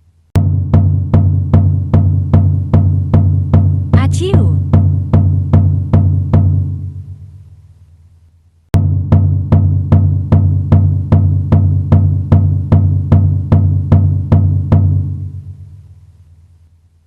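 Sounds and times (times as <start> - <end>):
low-pitched drum beat: 0.4 - 6.7.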